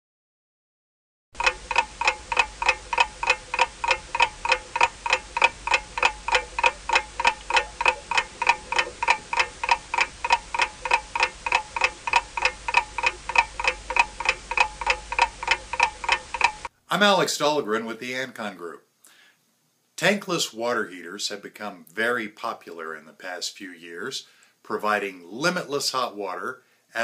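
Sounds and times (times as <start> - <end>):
clock ticking: 1.4 - 16.7.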